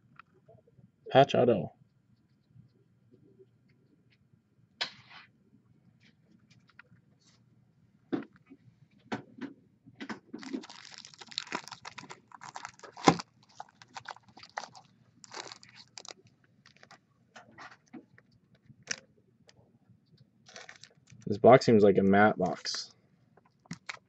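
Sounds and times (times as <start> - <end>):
wrapper and cardboard crinkling: 10.4 - 17.0, 20.5 - 21.3, 23.7 - 24.0.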